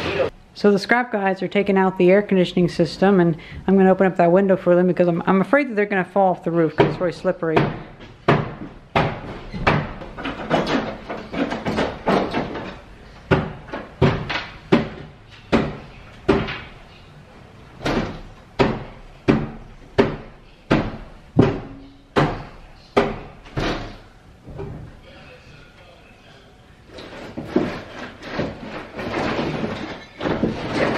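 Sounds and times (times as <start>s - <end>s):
heavy knocks ringing in a room: 6.8s - 12.7s, 17.8s - 24.0s.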